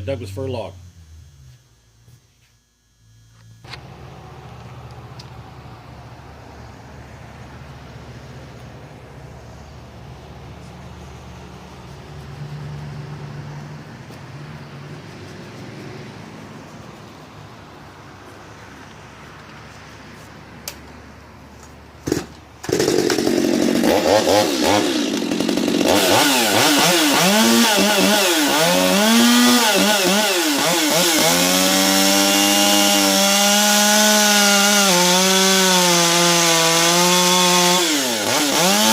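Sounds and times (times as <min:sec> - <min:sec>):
chainsaw revving: 0:22.0 - 0:38.9.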